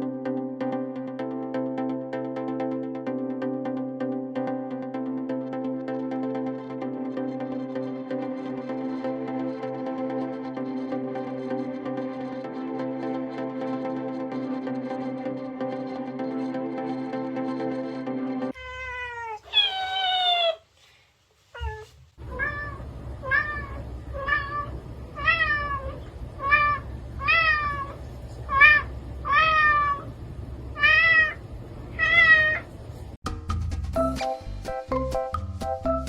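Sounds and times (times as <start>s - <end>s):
cat meowing: 18.6s - 20.7s, 21.6s - 30.1s, 30.8s - 32.7s
low background rumble: 22.2s - 33.2s.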